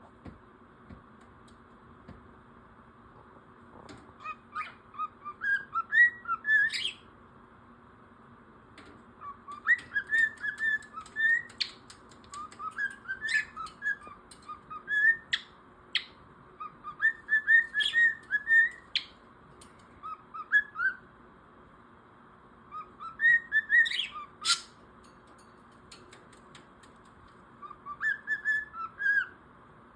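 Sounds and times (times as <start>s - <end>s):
bird chirping and whistling: 4.2s - 7.1s, 9.2s - 19.1s, 20.0s - 21.1s, 22.7s - 24.8s, 27.6s - 29.4s.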